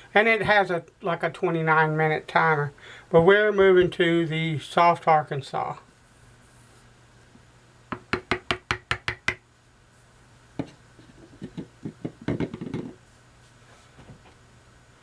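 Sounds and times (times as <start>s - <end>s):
knock: 11.4s - 13.0s.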